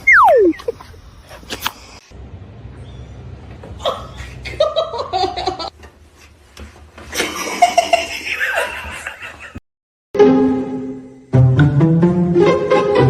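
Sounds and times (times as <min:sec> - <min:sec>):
person laughing: 0:00.3 - 0:01.0.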